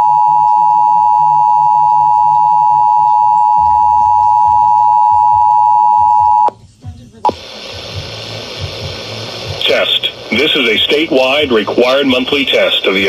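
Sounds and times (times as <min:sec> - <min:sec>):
two-tone alert alarm: 0:00.0 - 0:06.5.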